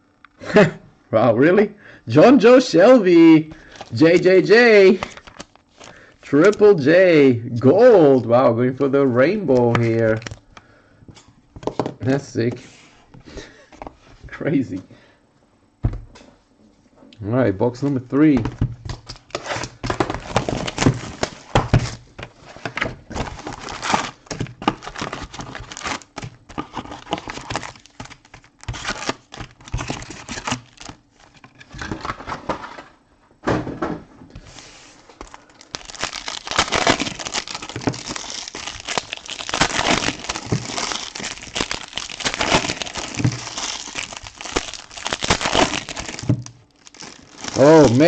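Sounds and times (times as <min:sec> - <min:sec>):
foil packs crinkling and tearing: 0:03.2 - 0:06.8, 0:09.3 - 0:10.5, 0:18.8 - 0:32.2, 0:34.4 - 0:48.0.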